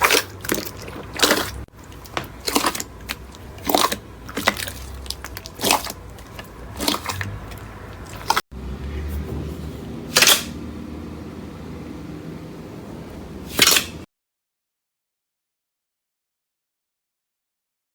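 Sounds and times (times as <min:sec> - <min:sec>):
slime squishing and popping: 0:00.0 - 0:08.4.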